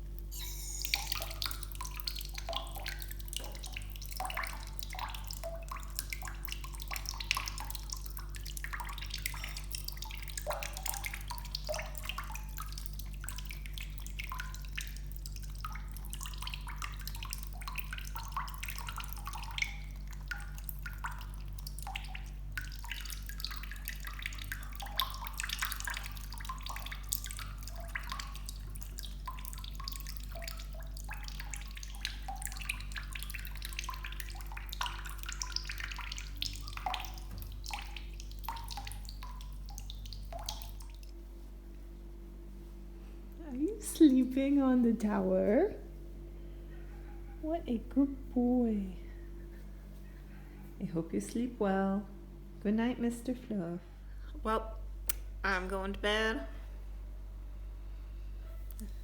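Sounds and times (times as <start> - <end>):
faucet trickling: 0.0 - 41.1
water dripping into bath: 0.0 - 53.3, 54.1 - 56.6, 58.6 - 59.0.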